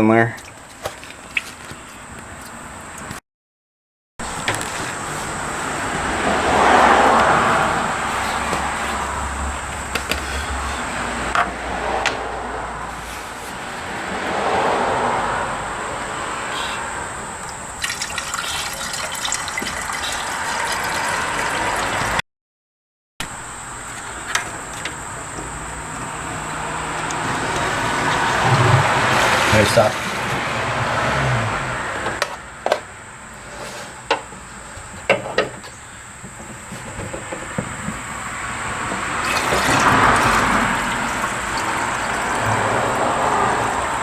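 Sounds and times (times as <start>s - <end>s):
liquid pouring: 17.1s - 22.2s, 39.2s - 44.0s.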